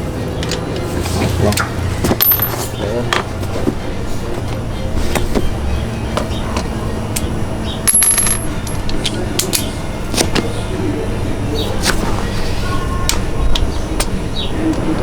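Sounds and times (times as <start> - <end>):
low background hum: 0.0 - 15.0
metal tools clinking: 0.4 - 3.2, 7.8 - 9.7.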